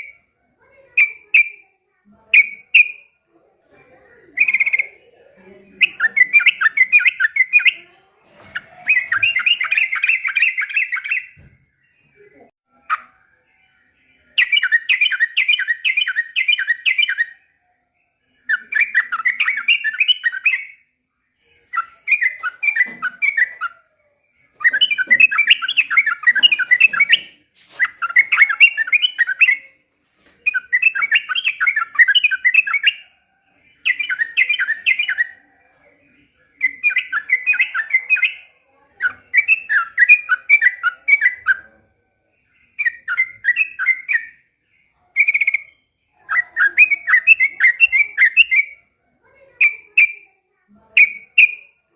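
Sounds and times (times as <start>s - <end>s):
bulbul singing chattering phrases: 0.0s - 51.9s.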